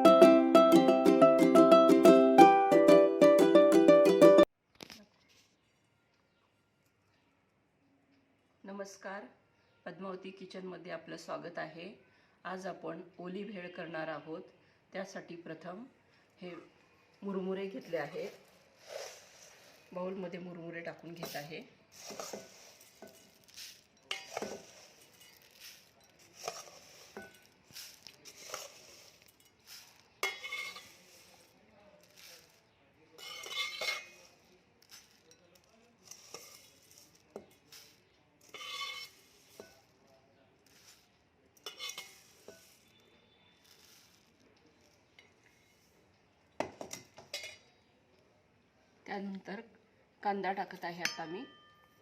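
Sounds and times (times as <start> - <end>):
puffed rice rustling in bowl: 17.6 - 46.2
utensil clinking against dish: 22.0 - 31.4, 33.2 - 34.3, 41.6 - 43.0, 46.6 - 47.7.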